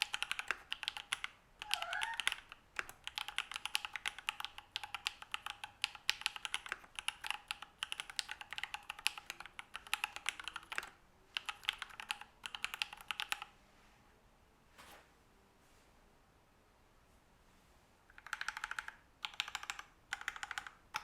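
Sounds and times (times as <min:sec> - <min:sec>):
fast typing on mechanical keyboard: 0:00.0 - 0:13.5, 0:18.1 - 0:21.0.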